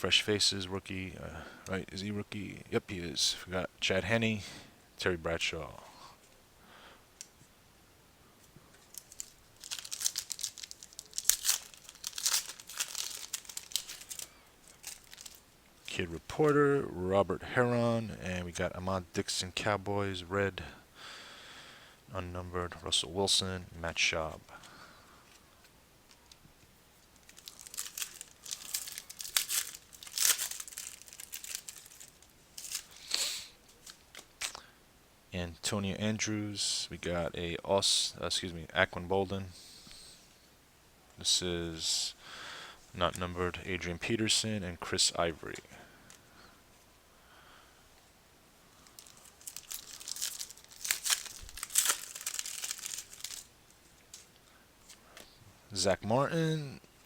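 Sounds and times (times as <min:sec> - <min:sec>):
wrapper tearing and crinkling: 0:08.8 - 0:15.4, 0:27.0 - 0:34.6, 0:48.8 - 0:55.0.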